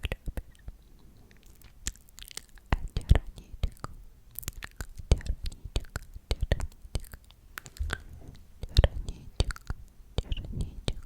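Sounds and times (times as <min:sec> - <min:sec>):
wet mouth clicks: 0:00.0 - 0:11.0
close whispering: 0:02.7 - 0:03.9, 0:05.0 - 0:11.0.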